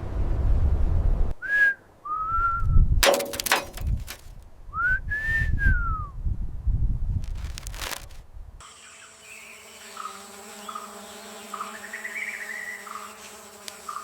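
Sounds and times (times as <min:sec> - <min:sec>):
low wind-like rumble: 0:00.0 - 0:01.3, 0:06.1 - 0:08.6
burst of clatter: 0:03.0 - 0:04.2.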